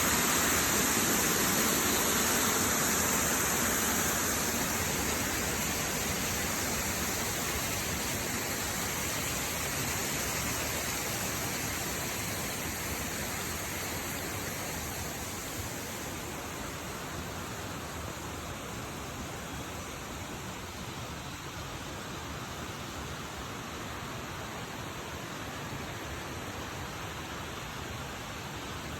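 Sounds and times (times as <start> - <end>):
waterfall rushing: 0.0 - 17.4.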